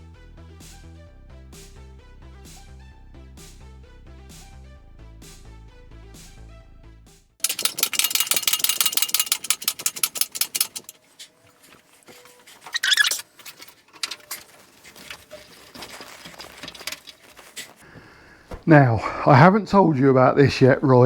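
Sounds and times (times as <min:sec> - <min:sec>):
hand tools clicking on metal: 0:07.4 - 0:17.9
scraping rasp: 0:07.4 - 0:17.9.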